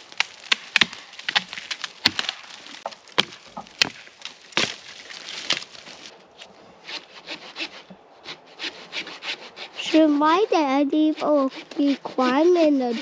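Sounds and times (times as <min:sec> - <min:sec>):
dry wood cracking and snapping: 0:00.0 - 0:06.6.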